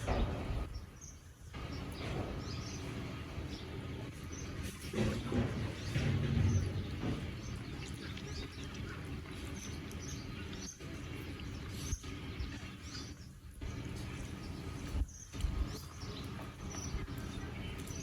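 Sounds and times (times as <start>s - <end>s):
small birds chirping: 0.0s - 18.0s
steady background hum: 0.0s - 18.0s.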